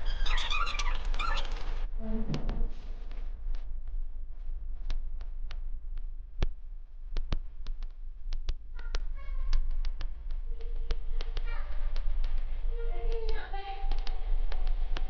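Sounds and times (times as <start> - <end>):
steady low rumble: 1.7 - 15.0
sharp taps and clicks: 4.8 - 12.5.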